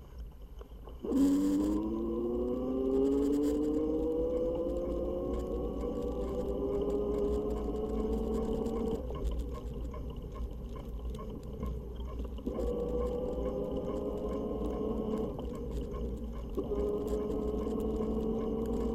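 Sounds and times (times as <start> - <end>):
electric motor whining: 1.0 - 9.6, 12.4 - 18.9
steady low rumble: 3.3 - 18.9.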